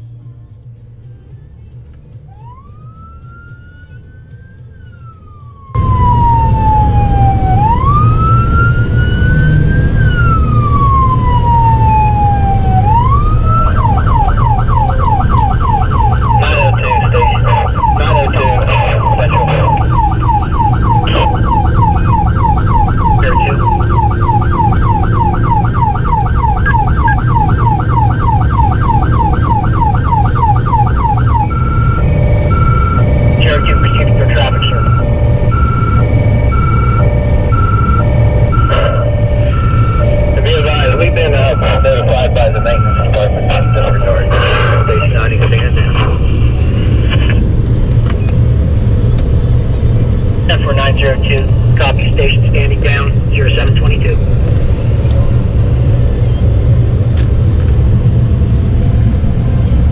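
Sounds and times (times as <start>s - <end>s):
vehicle engine and road rumble: 0.0s - 59.9s
electronic siren wailing and yelping: 4.8s - 47.5s.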